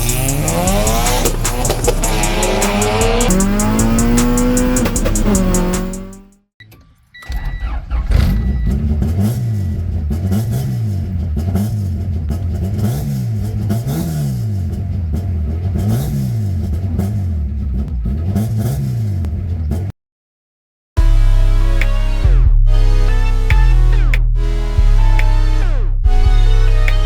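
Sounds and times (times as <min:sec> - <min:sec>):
car engine revving: 0:00.0 - 0:06.4, 0:08.0 - 0:19.9.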